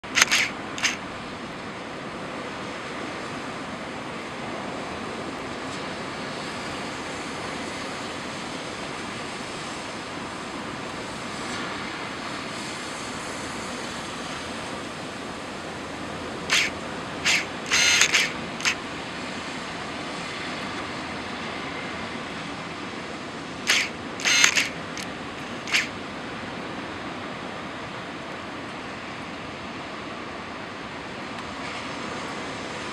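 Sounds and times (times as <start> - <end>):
sharp clicks: 0.0 - 1.0, 16.5 - 18.8, 23.7 - 25.9
wind: 0.0 - 12.5, 13.1 - 32.9.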